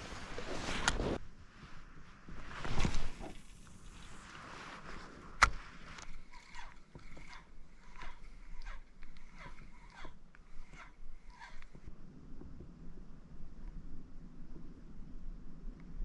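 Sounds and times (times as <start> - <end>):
reel bail click: 5.4 - 11.9
fishing reel ticking: 6.0 - 11.9.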